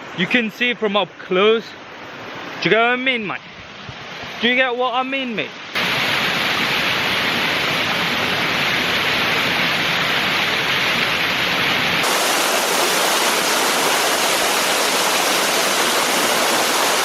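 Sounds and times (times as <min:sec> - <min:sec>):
waterfall rushing: 0:04.2 - 0:17.0.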